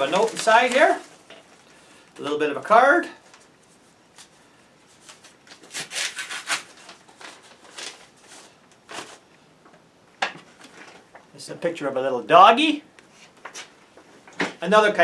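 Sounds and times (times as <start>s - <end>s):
paper rustling and scraping: 0.0s - 1.3s, 4.9s - 9.2s.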